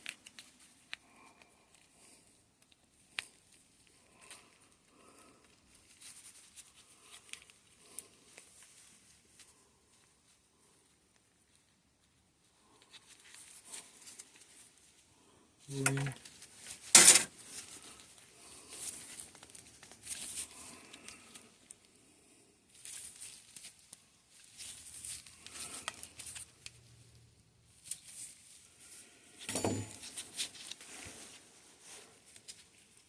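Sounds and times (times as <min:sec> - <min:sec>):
rustling and clicking of parts: 0:15.7 - 0:21.8.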